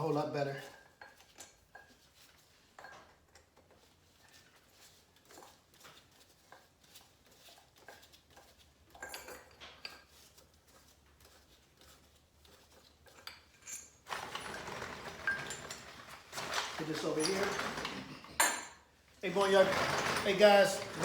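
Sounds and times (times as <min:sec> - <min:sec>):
metal tools clinking: 0:13.5 - 0:21.0.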